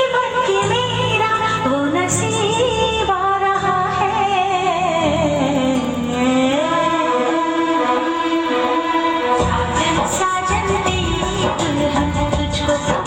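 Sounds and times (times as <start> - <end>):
film song with wavering melody: 0.0 - 13.0
bass beat: 9.4 - 13.0.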